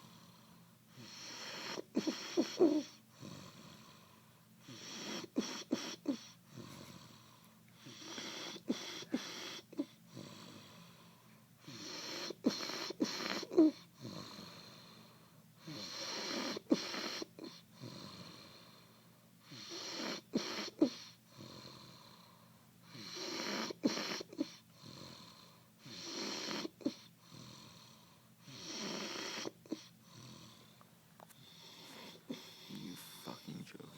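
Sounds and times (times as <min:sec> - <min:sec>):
snoring with snorts: 0:31.4 - 0:33.9.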